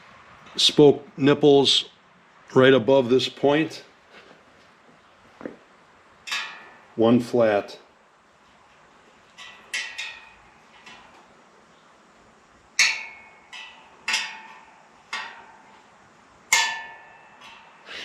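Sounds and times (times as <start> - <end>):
spoke wrench pinging on spokes: 12.8 - 15.8.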